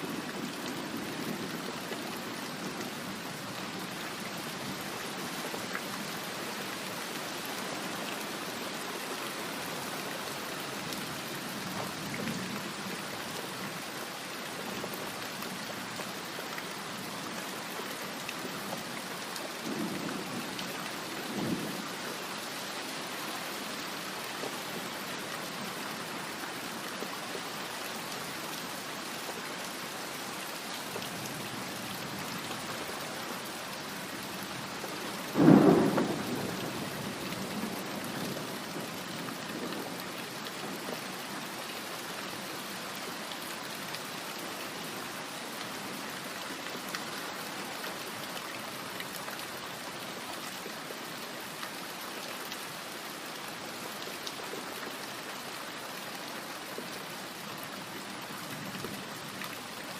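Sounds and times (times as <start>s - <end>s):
steady rain: 0.0s - 59.9s
faint rumbles of thunder: 35.3s - 39.0s
loud thunderclap: 35.4s - 36.6s.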